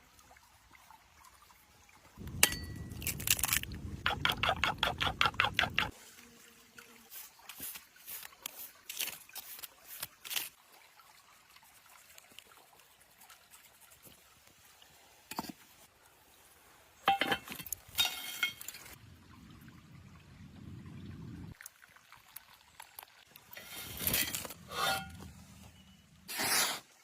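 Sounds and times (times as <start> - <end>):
small clicks and scrapes: 7.4 - 10.6.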